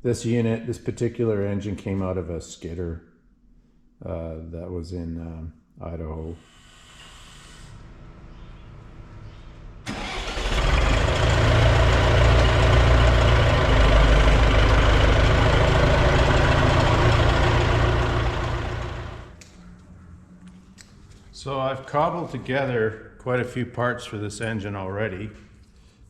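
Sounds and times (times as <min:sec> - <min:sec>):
engine running with deep hum: 0:08.0 - 0:19.4.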